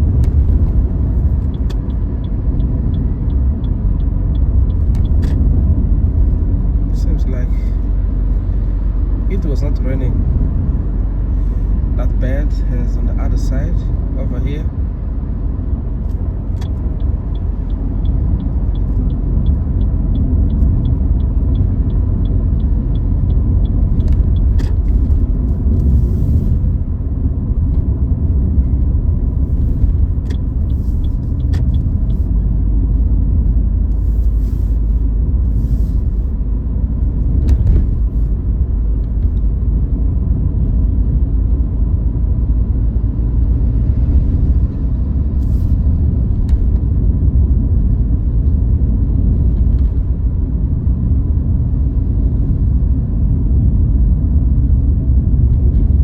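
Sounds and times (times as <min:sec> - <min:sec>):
road rumble inside car: 0:00.0 - 0:56.0.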